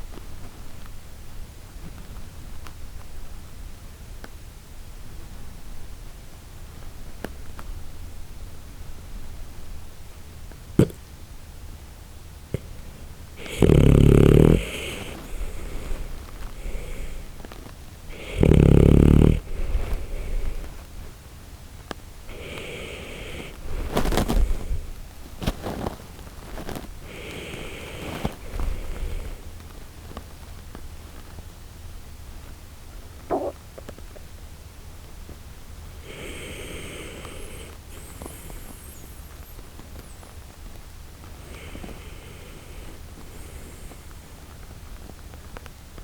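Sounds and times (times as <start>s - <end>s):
dog snoring: 12.5s - 20.9s, 22.3s - 25.0s, 27.0s - 29.5s, 33.3s - 33.6s, 36.0s - 39.6s, 41.4s - 44.2s.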